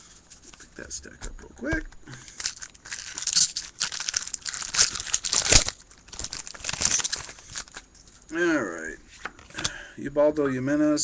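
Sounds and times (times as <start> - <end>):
foil wrapper crinkling and tearing: 2.3 - 7.9.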